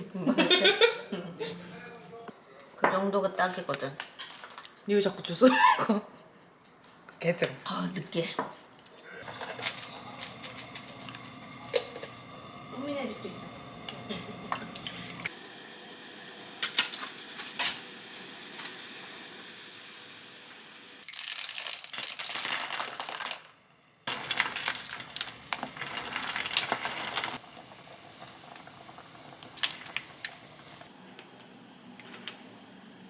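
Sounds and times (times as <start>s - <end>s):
food sizzling in a pan: 9.2s - 33.0s.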